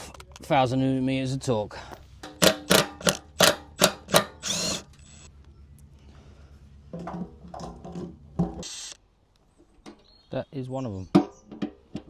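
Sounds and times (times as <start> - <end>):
cordless power driver buzzing: 2.2 - 5.3, 8.6 - 9.0.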